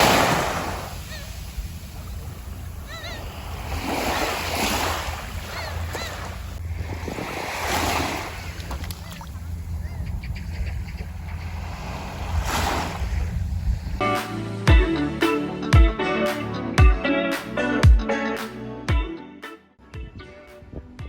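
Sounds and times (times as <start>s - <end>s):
sea waves washing on shore: 0.0s - 14.0s.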